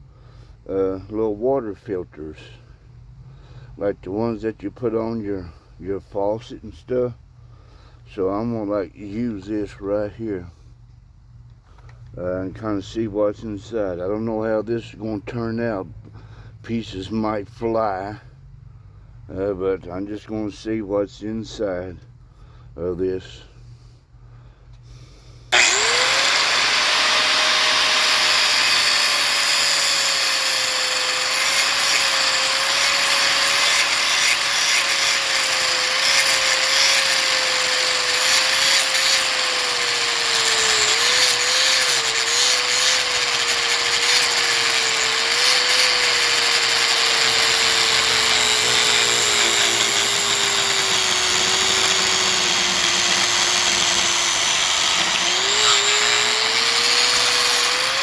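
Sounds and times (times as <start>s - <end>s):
gritty cutting noise: 25.5s - 58.0s
high-speed power tool whine: 25.5s - 58.0s.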